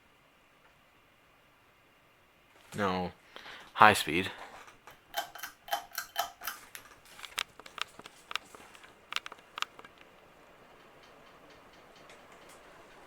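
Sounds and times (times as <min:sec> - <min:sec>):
ceiling fan whirring: 0:00.0 - 0:13.0
light clicks and rattles: 0:04.5 - 0:13.0.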